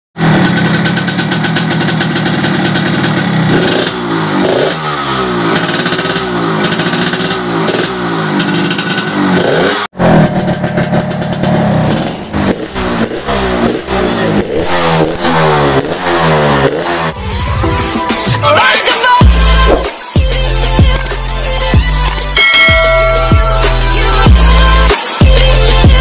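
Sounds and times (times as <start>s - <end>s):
motorcycle engine revving: 0.2s - 17.3s.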